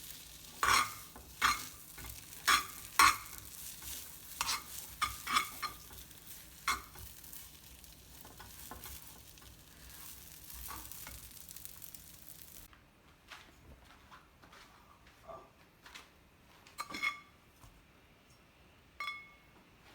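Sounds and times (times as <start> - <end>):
food sizzling in a pan: 0.0 - 12.7
utensil scraping a pan: 0.0 - 12.7.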